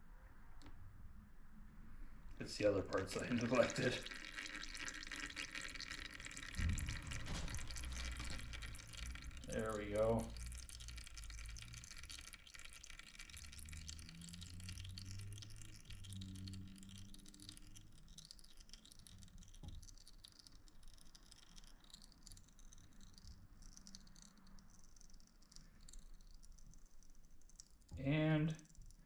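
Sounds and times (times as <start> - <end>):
low hum: 6.5 - 11.9.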